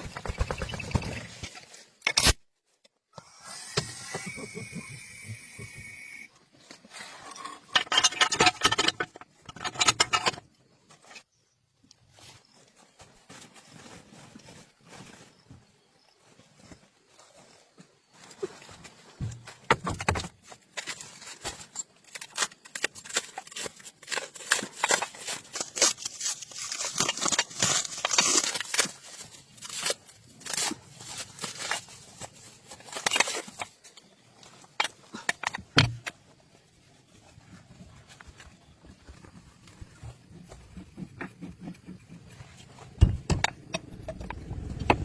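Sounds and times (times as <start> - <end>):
scraping and tapping on engine parts: 6.8 - 11.4, 18.8 - 45.0.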